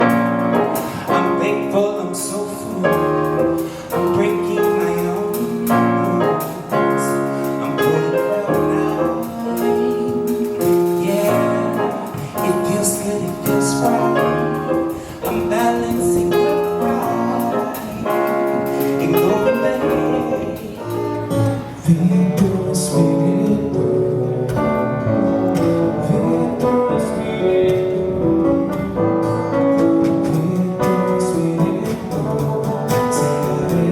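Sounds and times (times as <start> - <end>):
piano: 0.0 - 33.9
voices singing: 4.1 - 27.8.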